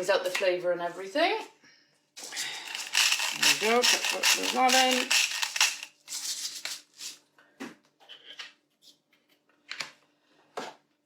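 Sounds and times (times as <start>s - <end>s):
rustling and scraping in kitchen: 2.2s - 11.0s.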